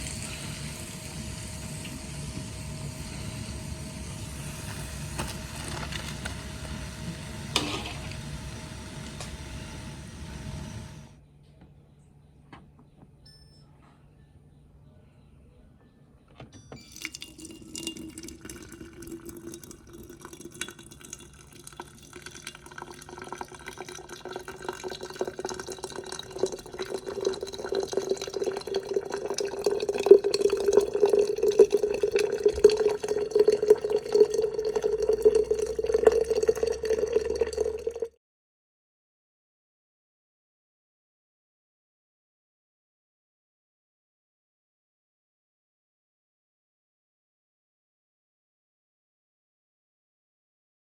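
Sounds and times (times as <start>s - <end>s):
liquid pouring into a container: 0.0s - 11.1s, 16.9s - 38.1s.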